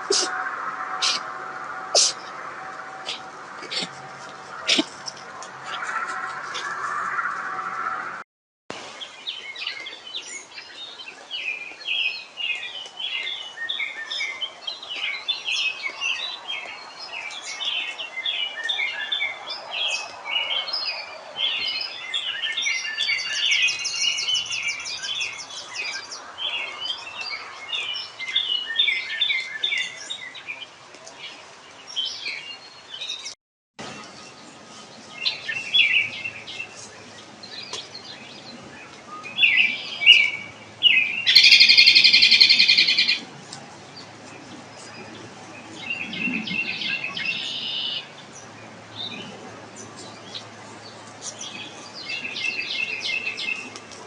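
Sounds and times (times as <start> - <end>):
songbirds singing and chirping: 0.0 - 54.0
fast high bird trill: 39.4 - 43.2.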